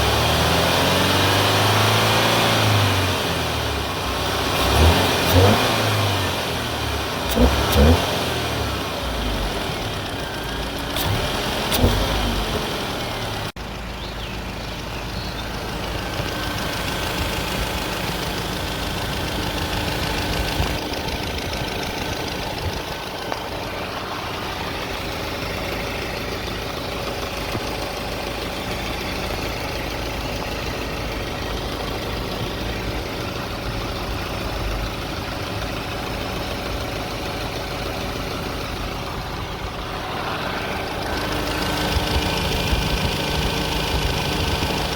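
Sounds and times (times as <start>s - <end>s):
car engine idling: 0.0s - 44.9s.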